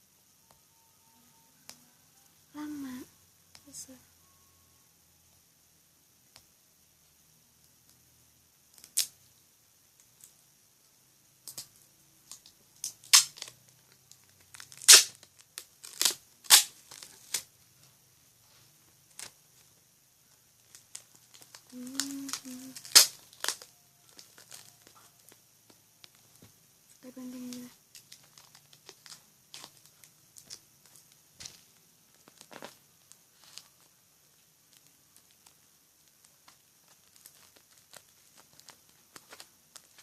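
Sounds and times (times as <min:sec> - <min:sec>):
tape ripping off roll: 0:12.4 - 0:13.6, 0:14.2 - 0:17.5, 0:20.7 - 0:25.3, 0:27.9 - 0:32.8.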